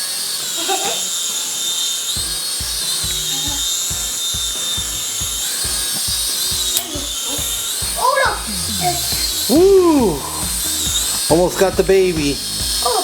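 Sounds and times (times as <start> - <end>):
low pulses: 0.0 - 13.0
propeller motors whining: 0.0 - 13.0.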